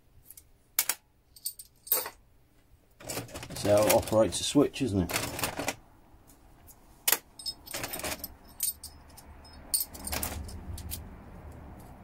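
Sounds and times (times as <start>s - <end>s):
metal relay parts clicking: 3.0s - 4.2s, 7.0s - 11.1s.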